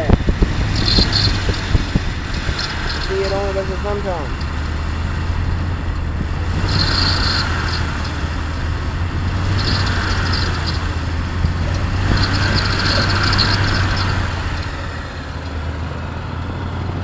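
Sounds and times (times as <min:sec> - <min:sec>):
car engine idling: 0:00.0 - 0:17.0
high chirping squeak: 0:00.6 - 0:04.7, 0:06.5 - 0:08.6, 0:09.4 - 0:15.5.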